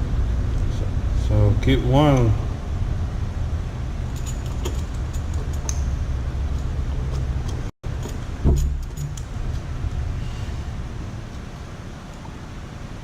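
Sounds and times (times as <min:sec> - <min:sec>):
steady low hum: 0:00.0 - 0:13.0
metal gears clicking and clinking: 0:04.0 - 0:09.6.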